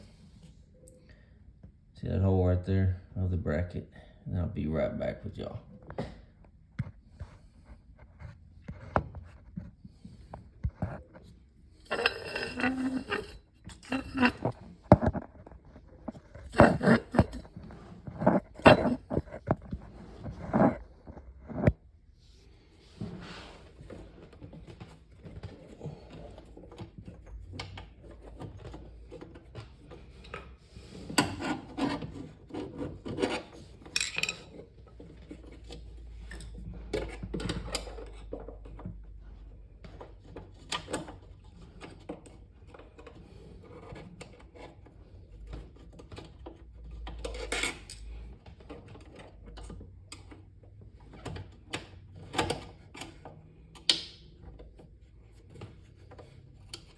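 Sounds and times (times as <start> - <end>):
scraping and rubbing of metal parts: 10.9 - 20.9.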